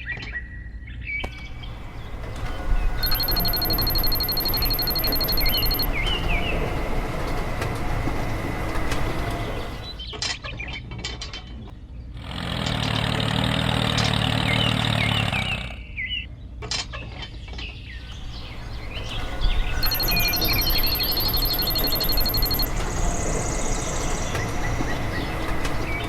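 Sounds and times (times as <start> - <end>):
small machine motor running: 1.4 - 10.1, 18.0 - 26.0
short high chirps: 3.0 - 5.9, 19.0 - 22.7.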